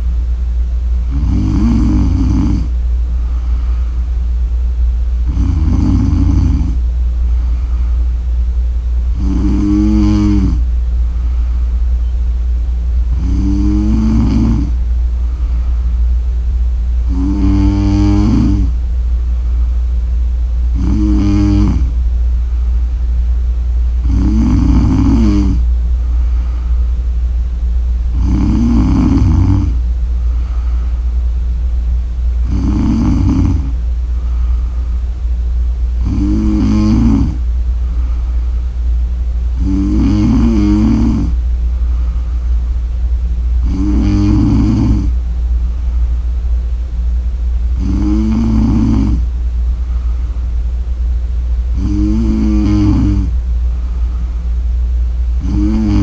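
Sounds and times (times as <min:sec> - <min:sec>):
steady low hum: 0:00.0 - 0:56.0
woman snoring: 0:01.1 - 0:03.9, 0:05.2 - 0:06.8, 0:09.1 - 0:10.7, 0:13.1 - 0:14.8, 0:17.0 - 0:18.8, 0:20.7 - 0:22.0, 0:24.0 - 0:25.7, 0:28.1 - 0:31.0, 0:32.4 - 0:34.9, 0:36.0 - 0:38.3, 0:39.5 - 0:42.3, 0:43.6 - 0:45.2, 0:47.7 - 0:49.3, 0:51.7 - 0:54.2, 0:55.4 - 0:56.0.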